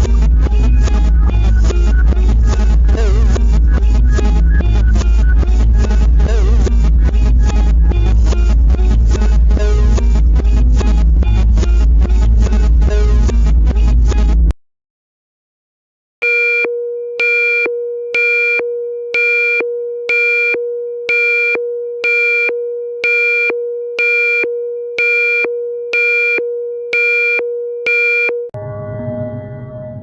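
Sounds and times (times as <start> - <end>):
electronic emergency alert alarm: 16.2 - 30.0.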